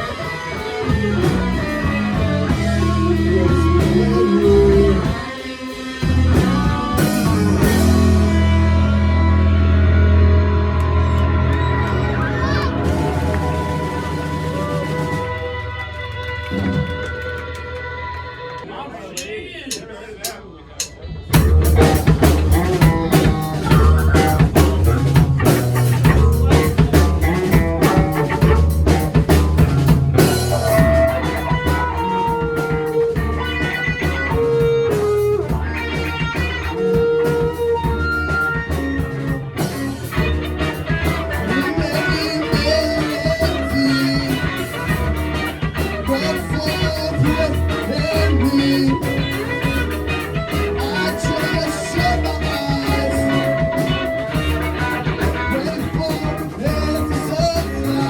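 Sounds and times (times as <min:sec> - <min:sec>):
sustained electric guitar notes: 0:00.0 - 0:18.6, 0:21.0 - 0:58.0
live rock band playing: 0:00.0 - 0:18.7, 0:19.7 - 0:58.0
dense drumming: 0:06.0 - 0:11.2, 0:20.8 - 0:58.0.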